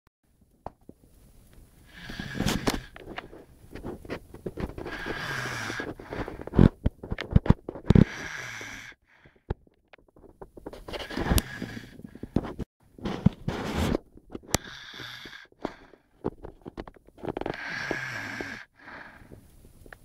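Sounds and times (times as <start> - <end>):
person snoring: 1.8 - 3.0, 4.8 - 6.6, 7.9 - 9.0, 11.0 - 12.2, 14.5 - 16.0, 17.4 - 19.4.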